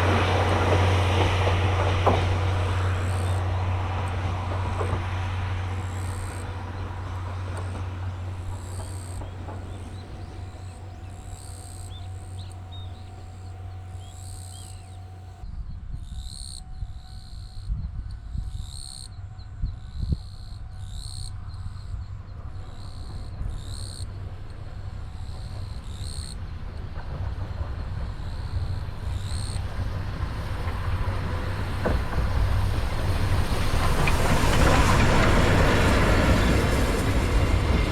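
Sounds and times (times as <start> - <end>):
low bumps: 0.0 - 15.4
train rumbling: 0.0 - 15.6, 16.8 - 37.9.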